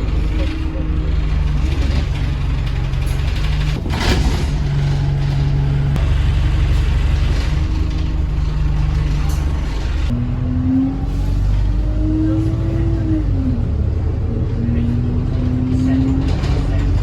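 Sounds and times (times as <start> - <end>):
diesel bus engine droning: 0.0 - 17.0.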